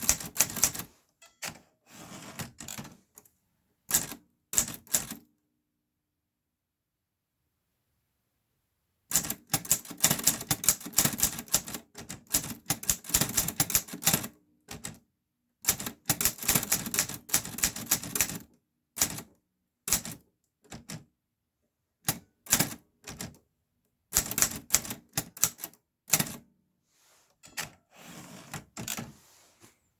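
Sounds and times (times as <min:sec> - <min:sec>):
soft rustling: 0:26.8 - 0:28.5, 0:29.1 - 0:29.9.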